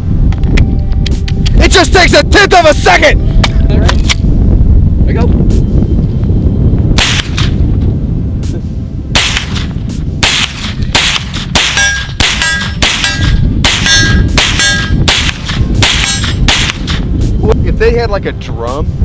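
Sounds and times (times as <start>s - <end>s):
gunshots: 7.0s - 7.6s, 9.2s - 17.1s
metallic ringing: 11.4s - 15.1s.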